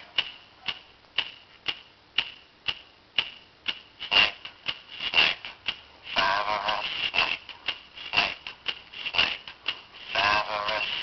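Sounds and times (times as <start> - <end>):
steady sharp ticking: 0.0 - 11.0.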